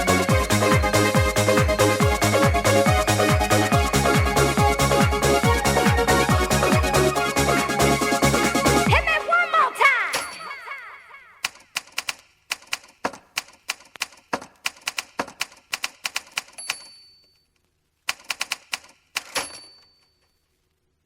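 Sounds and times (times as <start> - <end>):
electronic music: 0.0 - 11.4
typewriter bell ding: 10.1 - 10.8, 16.4 - 17.5, 19.2 - 20.4
typewriter keys clacking: 11.4 - 17.0, 18.1 - 20.3.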